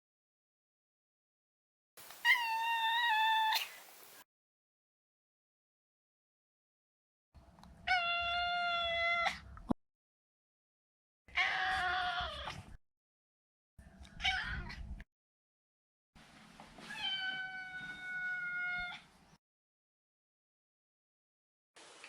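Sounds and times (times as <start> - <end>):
cat meowing: 2.2 - 3.8, 14.2 - 14.8, 16.9 - 19.1.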